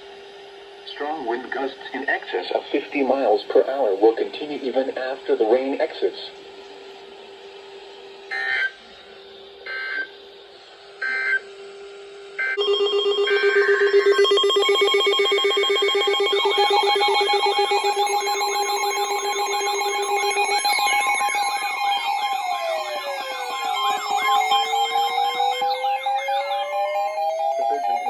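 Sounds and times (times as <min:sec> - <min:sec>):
loud ringing alarm: 0:01.0 - 0:28.0
warbling siren-like tone: 0:06.2 - 0:28.0.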